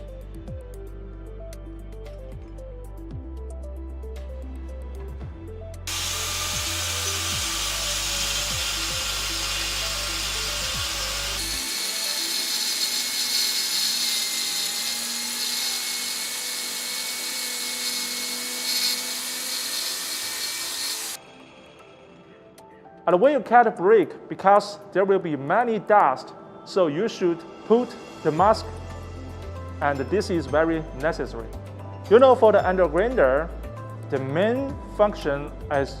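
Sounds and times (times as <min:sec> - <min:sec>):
background music: 0:00.0 - 0:36.0
angle grinder cutting brick: 0:05.9 - 0:21.2.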